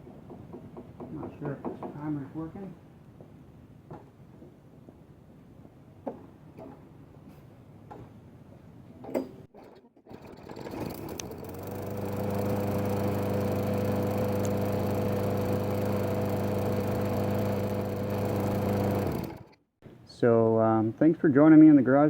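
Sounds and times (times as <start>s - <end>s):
starter cord pulled: 9.1s - 19.6s
lawn mower engine running: 9.6s - 19.6s.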